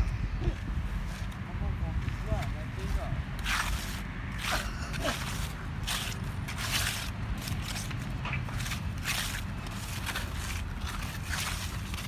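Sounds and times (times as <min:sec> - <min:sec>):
low rumble: 0:00.0 - 0:01.2
hand tools scraping paving: 0:02.8 - 0:12.0.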